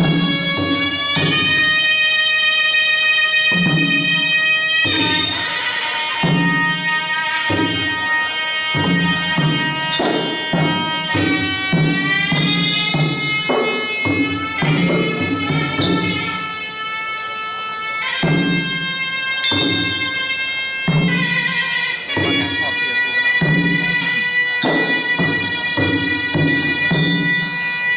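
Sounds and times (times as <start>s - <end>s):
steady drum beats: 0.0s - 17.0s, 17.9s - 27.9s
oboe playing wavering melody: 0.0s - 27.9s.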